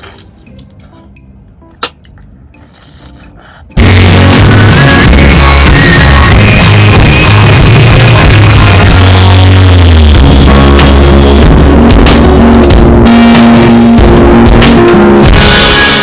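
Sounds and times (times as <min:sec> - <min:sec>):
rock music with heavy bass: 0:03.8 - 0:16.0.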